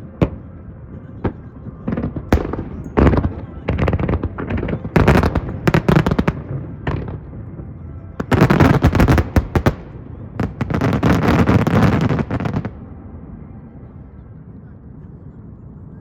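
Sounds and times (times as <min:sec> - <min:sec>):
fireworks bursting and crackling: 0:00.2 - 0:07.5, 0:08.2 - 0:12.8.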